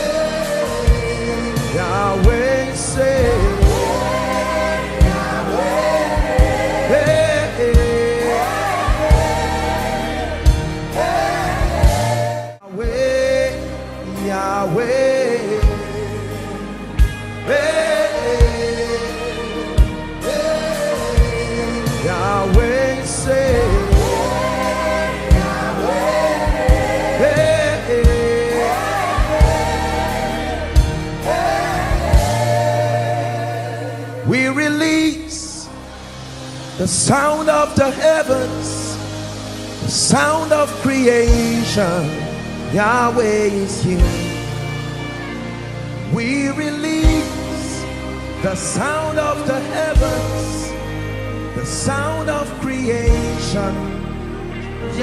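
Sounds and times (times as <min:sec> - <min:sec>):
band playing: 0:00.0 - 0:55.0
gospel choir singing: 0:00.0 - 0:55.0
held chords: 0:00.0 - 0:55.0.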